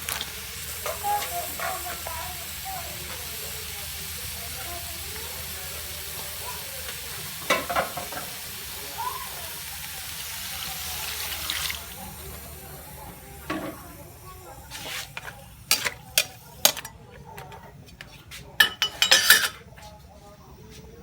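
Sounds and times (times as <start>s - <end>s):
meat sizzling in a pan: 0.0s - 17.0s
utensil clacking against pan: 14.7s - 19.7s.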